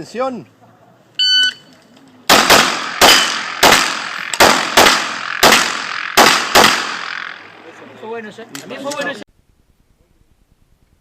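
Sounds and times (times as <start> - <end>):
shot timer beep: 1.2 - 1.7
pistol shots: 2.3 - 7.5.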